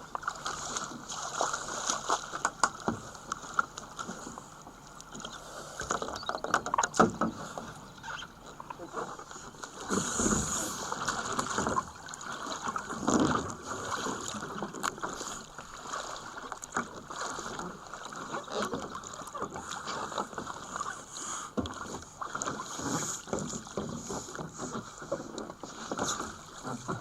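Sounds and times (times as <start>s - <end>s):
water splashing against kayak hull: 0.0s - 27.0s
knocks and bumps on kayak: 6.4s - 7.4s, 23.0s - 27.0s.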